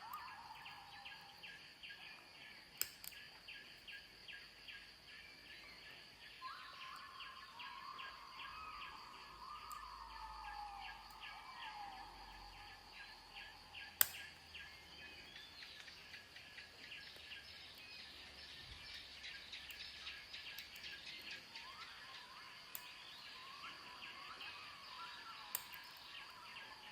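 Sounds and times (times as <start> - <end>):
sharp click: 2.8 - 3.2, 14.0 - 14.3
rapid repeated chirping: 6.2 - 26.9.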